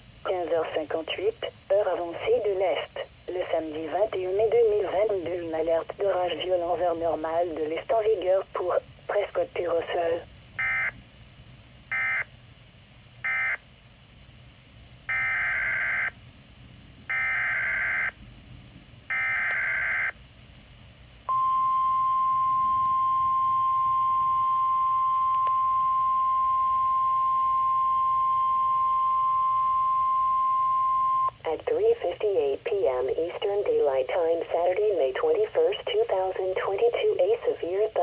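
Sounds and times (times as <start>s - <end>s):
steady weather alarm tone: 10.6s - 11.0s, 11.9s - 12.3s, 13.2s - 13.6s, 15.1s - 16.2s, 17.1s - 18.2s, 19.1s - 20.3s, 21.2s - 31.4s.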